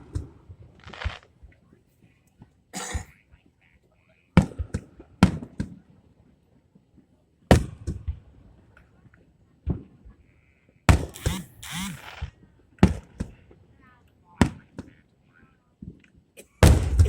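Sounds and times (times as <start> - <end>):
fireworks crackle and hiss: 0.8 - 1.3.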